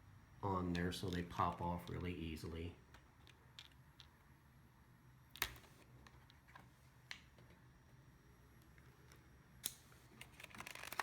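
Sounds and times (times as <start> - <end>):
plastic covers clicking off: 10.2 - 11.0.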